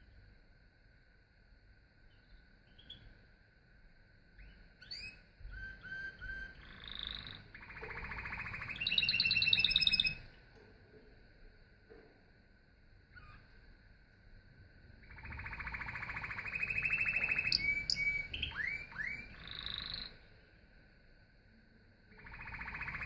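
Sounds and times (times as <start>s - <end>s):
canary singing: 2.1s - 3.1s, 4.4s - 10.3s, 13.1s - 13.5s, 15.0s - 20.2s, 22.2s - 23.0s.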